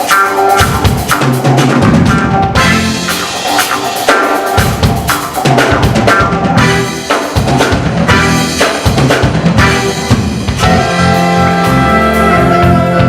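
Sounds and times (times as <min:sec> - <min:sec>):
drum kit hits: 0:00.0 - 0:13.0
soul band playing: 0:00.0 - 0:13.0.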